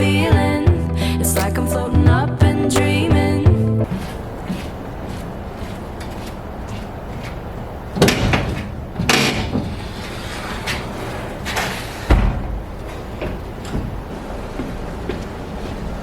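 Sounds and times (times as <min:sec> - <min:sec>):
heavy thumps and bangs: 0:12.0 - 0:15.2.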